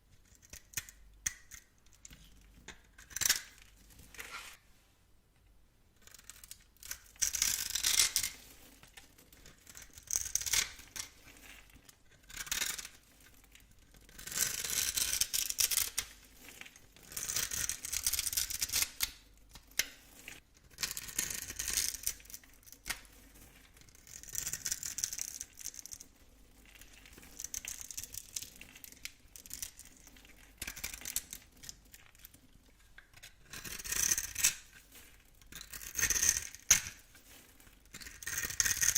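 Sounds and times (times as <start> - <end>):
knife cutting through soap: 33.1 - 38.9.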